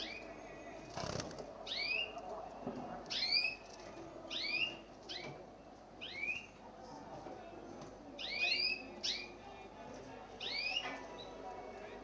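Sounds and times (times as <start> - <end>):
canary chirping: 0.0 - 5.4, 6.0 - 6.6, 8.2 - 9.5, 10.3 - 11.4.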